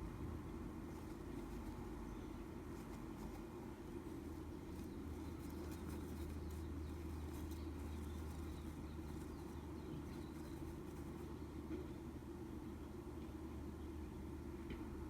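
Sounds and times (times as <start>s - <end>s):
steady low hum: 0.0s - 15.0s
light clicks and scratches: 0.8s - 11.9s.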